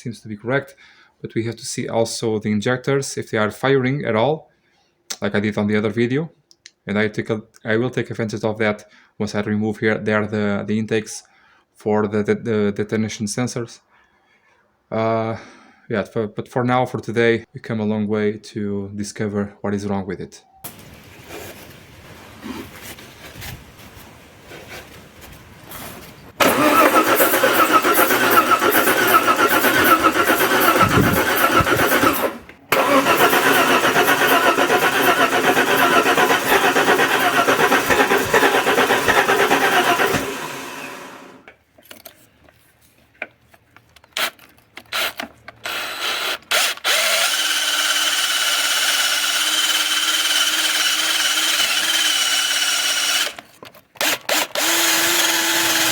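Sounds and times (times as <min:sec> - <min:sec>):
car engine cranking: 0:26.4 - 0:41.4.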